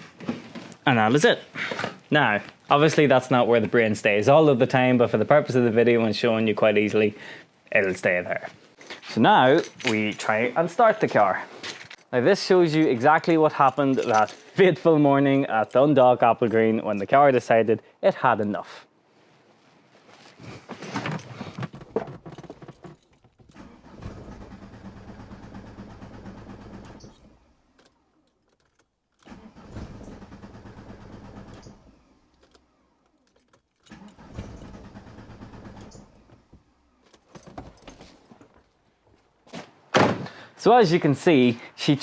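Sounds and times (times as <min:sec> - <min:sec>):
keys rattling: 0:08.7 - 0:10.6, 0:11.6 - 0:13.0, 0:13.6 - 0:14.6, 0:20.6 - 0:23.6, 0:27.2 - 0:29.3, 0:32.3 - 0:34.6, 0:36.9 - 0:39.1
diesel engine cranking: 0:20.8 - 0:38.0.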